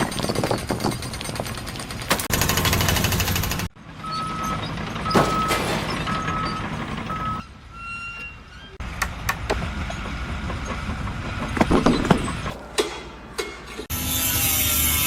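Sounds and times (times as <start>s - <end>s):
heavy machinery running: 0.2s - 7.4s
reversing alarm beeping: 4.0s - 8.7s.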